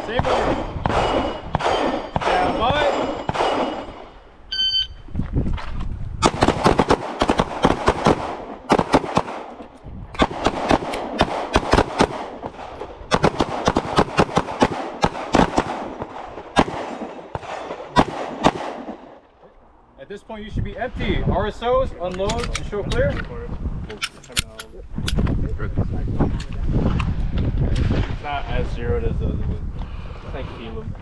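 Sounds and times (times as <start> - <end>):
handgun shots: 0.2 - 4.0, 6.2 - 19.0
electronic beep: 4.5 - 5.1.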